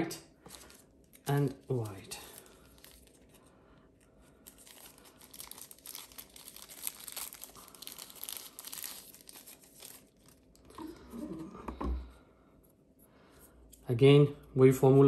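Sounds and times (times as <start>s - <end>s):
plastic packaging crinkling: 0.5s - 11.1s.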